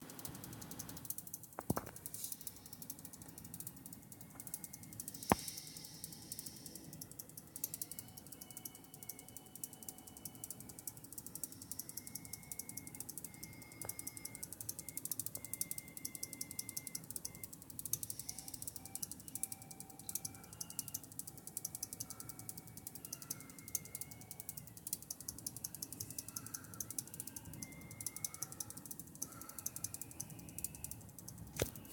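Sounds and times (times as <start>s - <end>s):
faint high whistling tones: 2.3s - 31.9s.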